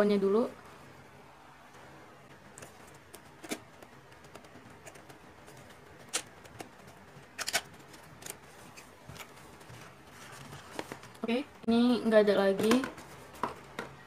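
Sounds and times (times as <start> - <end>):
packaging clicks and taps: 2.6 - 8.4.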